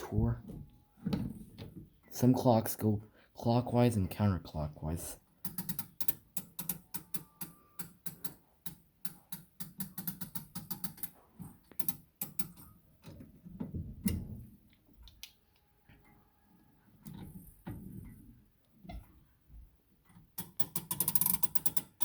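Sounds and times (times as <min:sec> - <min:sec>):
clock winding ratchet clicking: 0:05.4 - 0:12.6, 0:20.4 - 0:22.0.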